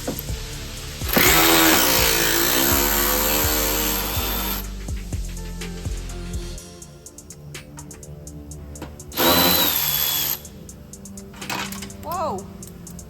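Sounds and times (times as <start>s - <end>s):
background music with steady beat: 0.0s - 13.0s
power tool running: 1.1s - 4.7s, 9.2s - 10.5s.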